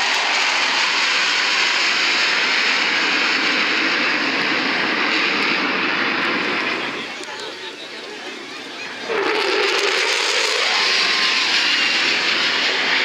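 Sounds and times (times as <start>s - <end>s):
fighter jets roaring: 0.0s - 6.9s.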